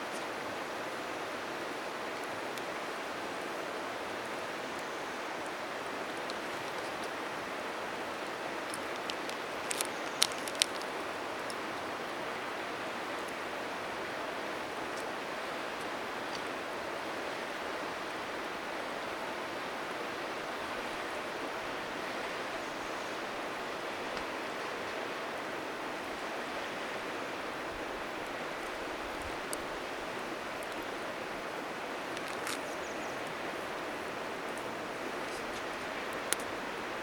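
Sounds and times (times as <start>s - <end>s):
river rushing: 0.0s - 37.0s
wood fire crackling: 8.0s - 12.3s, 27.4s - 37.0s.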